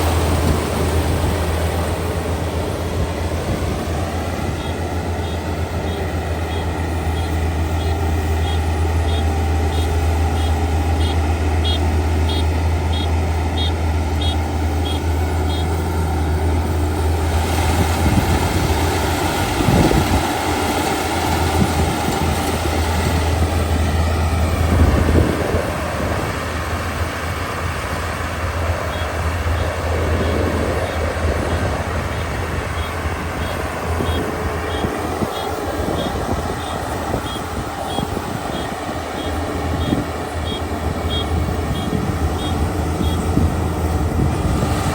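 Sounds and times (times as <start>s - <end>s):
combine harvester engine hum: 0.0s - 44.9s
high electronic beeping: 32.2s - 43.3s.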